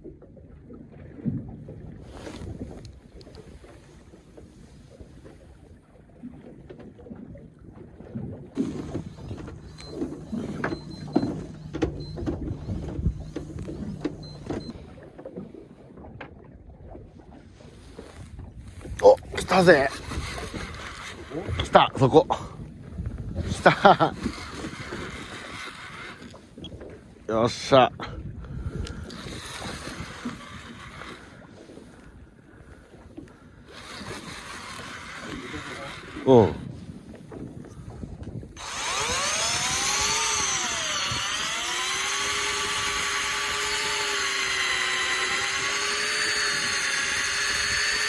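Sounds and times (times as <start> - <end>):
water moving around a boat: 0.0 - 48.0
wind buffeting the microphone: 1.2 - 5.8, 16.0 - 34.4, 35.2 - 44.0
fishing reel motor whirring: 2.1 - 4.1, 8.6 - 15.0, 18.8 - 26.9, 28.5 - 48.0.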